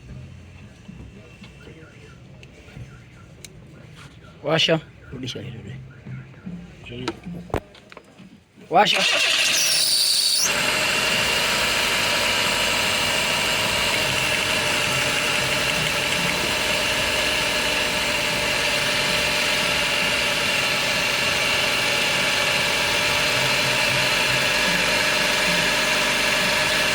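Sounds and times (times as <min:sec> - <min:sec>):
car engine idling: 0:09.0 - 0:26.9.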